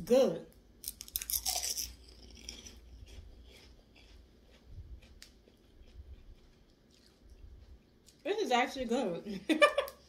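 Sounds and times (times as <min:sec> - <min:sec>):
crunchy snack being chewed: 0:00.8 - 0:08.3.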